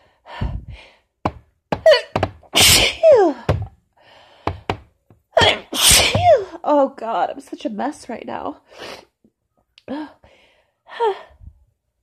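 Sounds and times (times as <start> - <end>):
short thuds: 0.4 - 3.8, 4.4 - 5.2, 5.9 - 6.5
woman sneezing: 2.6 - 3.2, 5.4 - 6.5.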